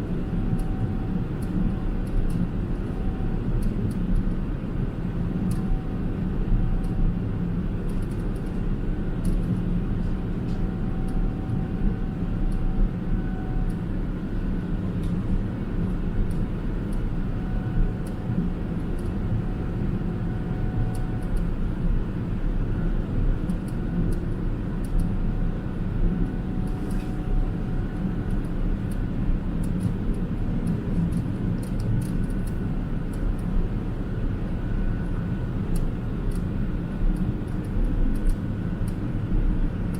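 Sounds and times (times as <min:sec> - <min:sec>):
airplane cabin rumble: 0:00.0 - 0:39.9
light ticks: 0:00.5 - 0:00.8, 0:01.4 - 0:02.4, 0:03.6 - 0:04.3, 0:05.5 - 0:05.7, 0:06.8 - 0:07.0, 0:07.9 - 0:08.6, 0:09.2 - 0:09.5, 0:16.2 - 0:17.0, 0:20.9 - 0:21.5, 0:23.4 - 0:25.1, 0:29.6 - 0:33.5, 0:35.7 - 0:36.5, 0:37.1 - 0:39.0
faint whine: 0:10.0 - 0:39.9.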